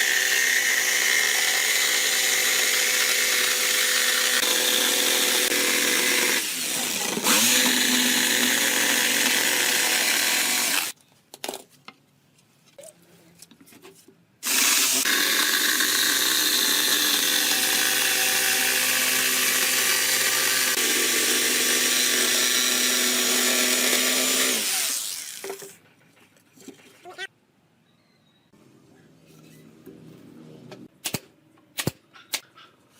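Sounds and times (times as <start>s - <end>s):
power tool motor on wood: 0.0s - 11.0s, 14.4s - 25.5s.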